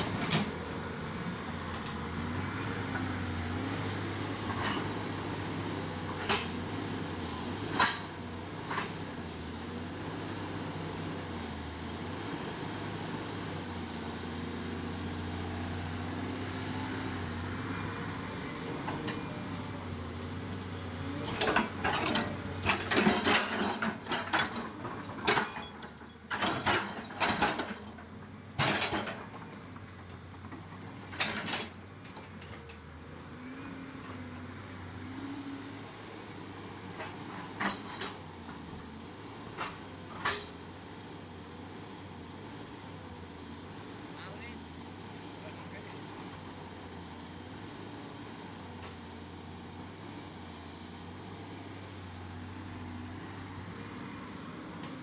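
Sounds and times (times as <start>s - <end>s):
engine running at low speed: 0.0s - 55.0s
loud irregular knocks and clanks: 21.3s - 27.9s, 28.6s - 29.6s.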